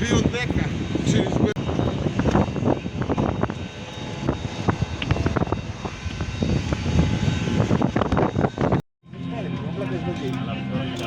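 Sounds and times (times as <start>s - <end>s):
airliner cabin rumble: 0.0s - 8.8s.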